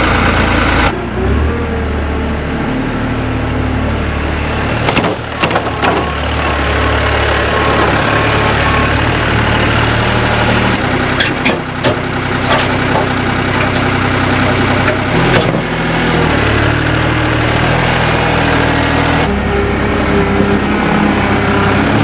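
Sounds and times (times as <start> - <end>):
diesel tractor engine idling: 0.0 - 22.0
sharp engine knocks: 4.8 - 6.3, 11.1 - 15.7.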